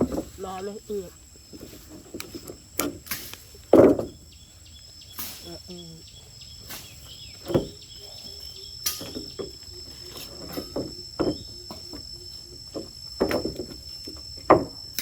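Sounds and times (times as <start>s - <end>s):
high-pitched insect chirping: 0.0s - 15.0s
sharp knocks: 1.5s - 4.2s, 6.6s - 7.9s, 8.8s - 12.1s, 12.7s - 15.0s.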